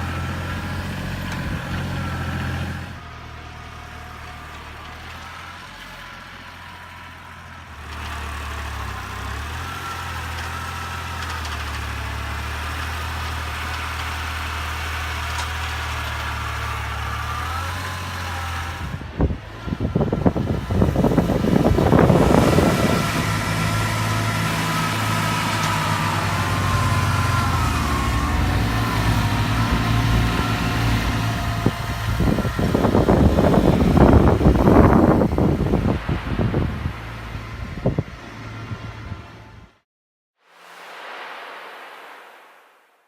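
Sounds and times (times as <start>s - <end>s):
engine knocks and clatter: 0.0s - 39.8s
tractor diesel engine running: 0.0s - 39.8s
wavering whine: 18.8s - 39.5s.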